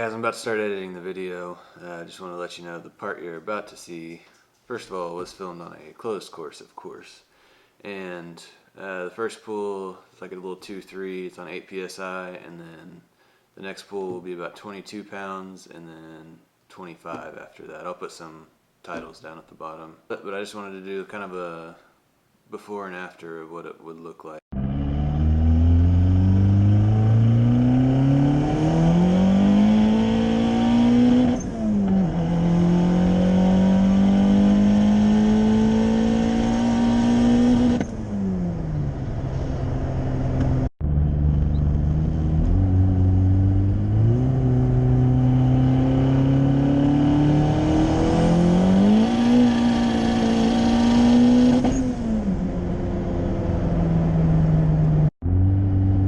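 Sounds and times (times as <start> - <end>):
car engine accelerating hard: 24.5 - 56.0.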